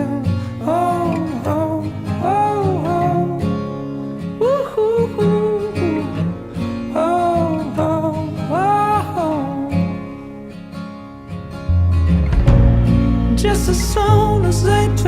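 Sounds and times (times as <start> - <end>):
person singing: 0.0 - 3.7, 4.4 - 10.2, 13.3 - 15.0
acoustic guitar: 0.0 - 15.0.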